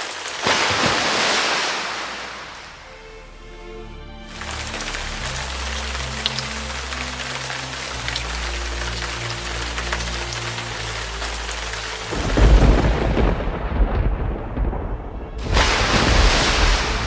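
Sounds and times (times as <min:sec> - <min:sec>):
steady rain: 0:00.0 - 0:03.1, 0:04.3 - 0:17.0
thunder rumble: 0:12.0 - 0:17.0.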